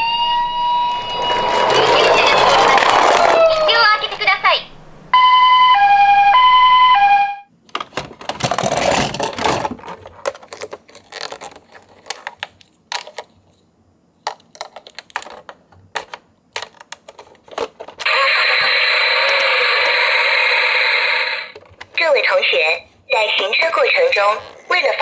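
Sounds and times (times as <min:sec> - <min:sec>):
toy siren two-tone: 0:00.0 - 0:03.1, 0:05.2 - 0:07.5, 0:18.1 - 0:20.7
loud steady electronic toy sound: 0:00.0 - 0:04.5, 0:18.0 - 0:21.6
rattling scrape: 0:00.2 - 0:04.2
toy cars clicking and knocking: 0:01.0 - 0:04.2, 0:07.7 - 0:13.6, 0:14.2 - 0:22.0.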